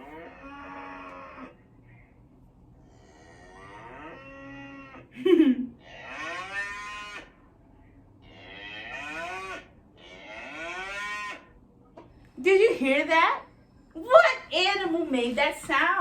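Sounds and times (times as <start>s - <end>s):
cow mooing: 0.0s - 1.6s, 3.0s - 5.0s, 5.8s - 7.4s, 8.2s - 11.5s.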